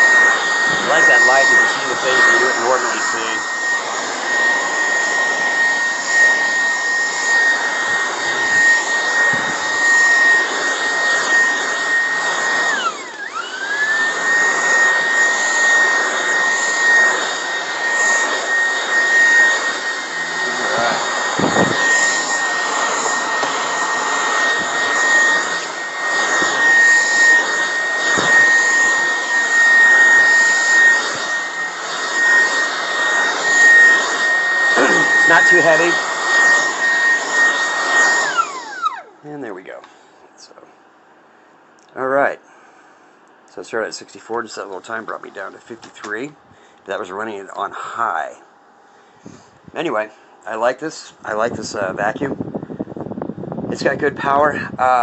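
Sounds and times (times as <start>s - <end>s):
stick vacuum motor whine: 0.0s - 39.6s.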